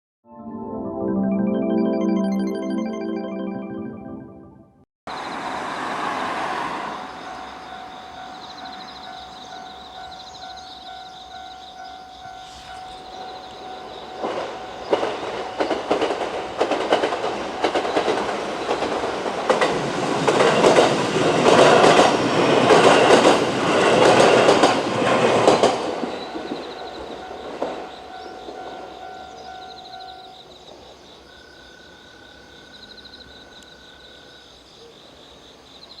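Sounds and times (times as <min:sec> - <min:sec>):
level crossing warning alarm: 0:07.0 - 0:16.3
train wheels clacking over rail joints: 0:13.8 - 0:27.9.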